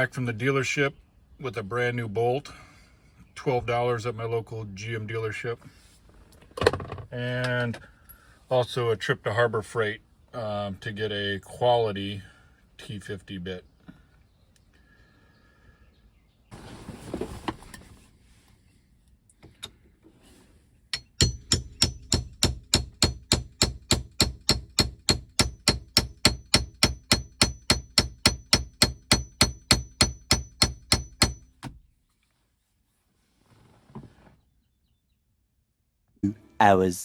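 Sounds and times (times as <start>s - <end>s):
hammer striking metal: 21.0s - 31.4s.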